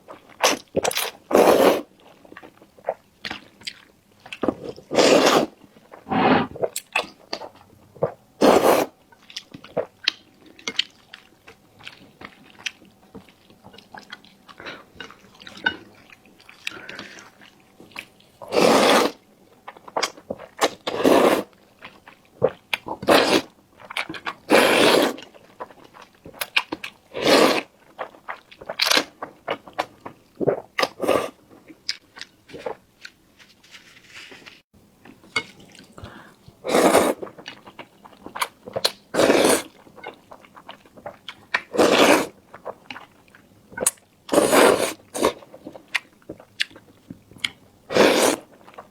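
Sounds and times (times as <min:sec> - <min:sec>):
chewing and crunching food: 0:00.0 - 0:48.9.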